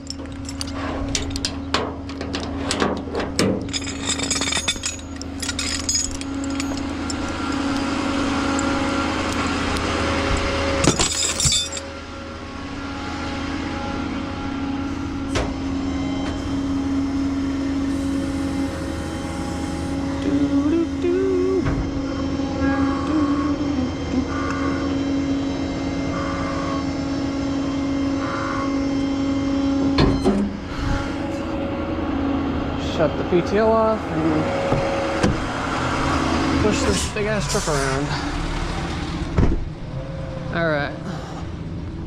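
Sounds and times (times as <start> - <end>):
metal tools clanking: 0.0 - 9.8, 10.4 - 11.9
truck engine idling: 0.0 - 28.1.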